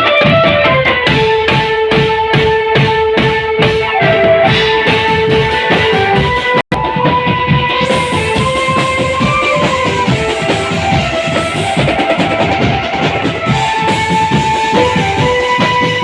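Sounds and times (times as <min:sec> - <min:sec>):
fast dense drumming: 0:00.0 - 0:16.0
held melody notes: 0:00.0 - 0:16.0.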